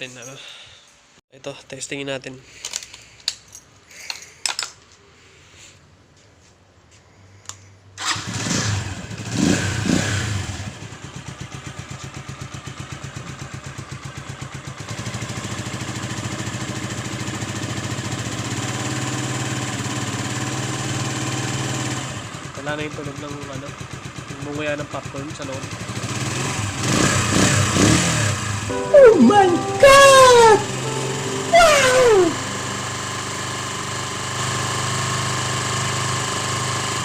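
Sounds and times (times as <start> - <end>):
motorcycle engine starting and idling: 8.0 - 27.8, 32.9 - 37.0.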